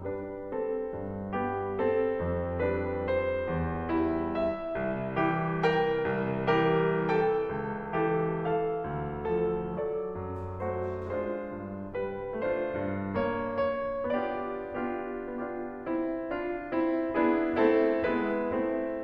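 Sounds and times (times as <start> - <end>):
gentle piano melody: 0.0 - 19.0.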